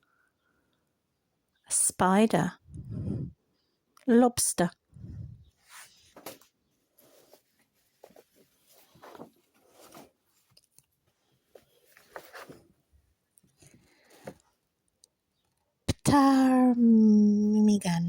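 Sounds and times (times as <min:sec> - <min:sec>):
book pages rustling: 0:05.6 - 0:12.8.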